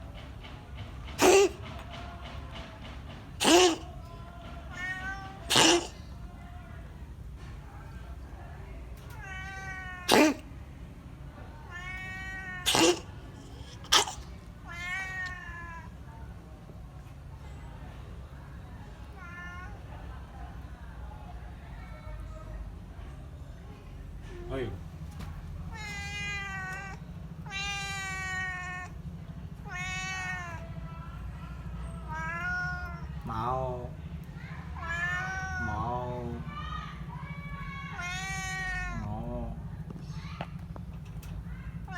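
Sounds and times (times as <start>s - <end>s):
cat coughing: 1.2s - 1.6s, 3.4s - 3.9s, 4.8s - 6.1s, 9.6s - 10.5s, 12.2s - 14.9s
cat meowing: 1.2s - 1.6s, 3.4s - 3.9s, 4.6s - 6.0s, 9.0s - 10.4s, 11.7s - 15.9s, 19.1s - 19.8s, 25.7s - 29.0s, 29.6s - 30.9s, 31.9s - 33.2s, 34.6s - 36.5s, 37.8s - 39.1s.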